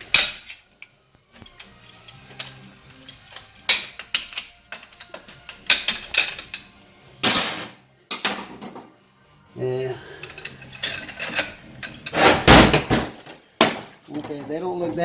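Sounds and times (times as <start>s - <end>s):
metal plates clattering: 10.2s - 15.0s.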